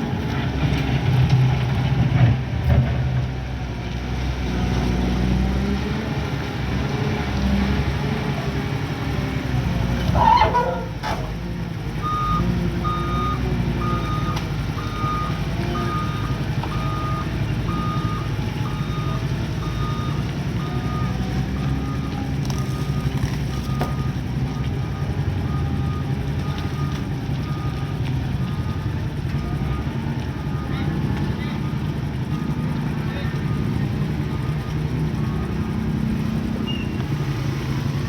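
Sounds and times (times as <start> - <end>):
diesel engine running: 0.0 - 38.0
reversing alarm beeping: 12.0 - 38.0.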